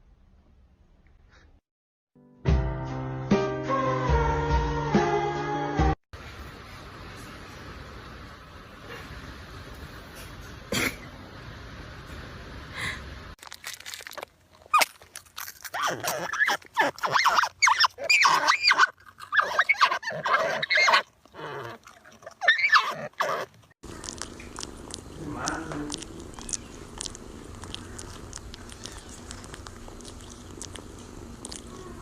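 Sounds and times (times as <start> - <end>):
pet animal calling: 15.8 - 32.0.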